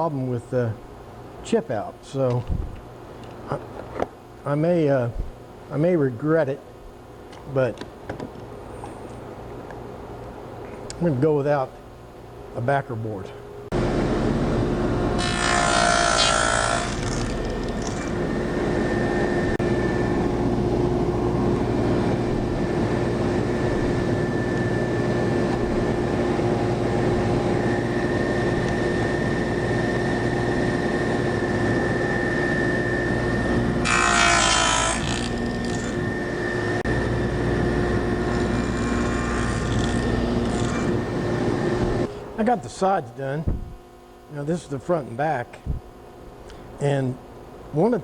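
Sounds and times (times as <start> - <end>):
power tool cutting plywood: 15.2 - 18.2, 33.8 - 36.0, 38.1 - 41.1.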